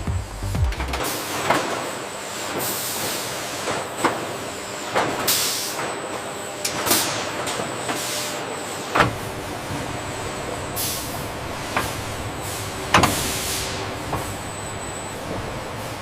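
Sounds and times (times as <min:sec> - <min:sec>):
factory machinery running: 0:00.0 - 0:16.0
air hissing: 0:07.9 - 0:16.0.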